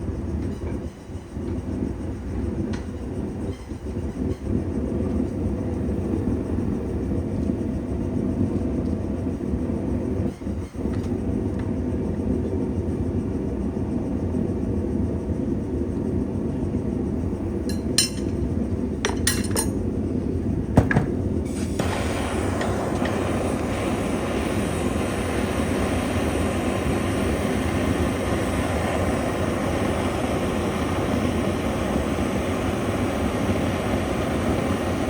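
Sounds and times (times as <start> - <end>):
metal clinks: 17.7 - 18.4, 19.1 - 19.8.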